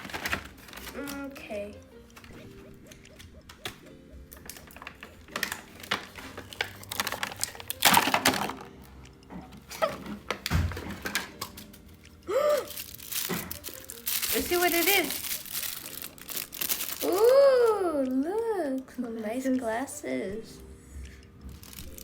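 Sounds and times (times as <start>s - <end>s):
plastic packaging clicks and taps: 0.0s - 1.2s, 3.1s - 8.7s, 10.0s - 11.8s.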